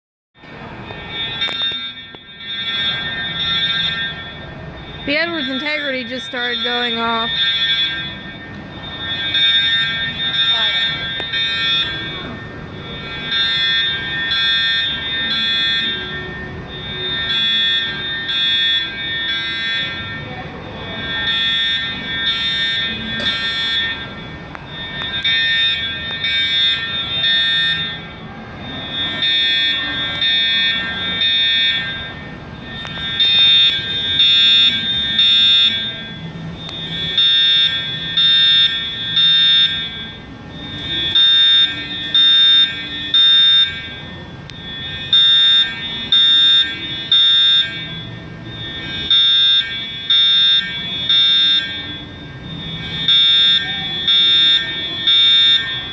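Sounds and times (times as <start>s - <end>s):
fire alarm horn blasts: 0.4s - 55.9s.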